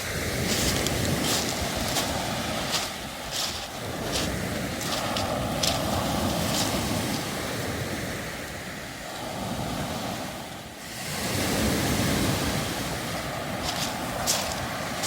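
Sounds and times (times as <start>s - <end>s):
footstep crunching on pebbles: 0.0s - 7.2s, 13.6s - 15.0s
waves over pebble beach: 0.0s - 15.0s.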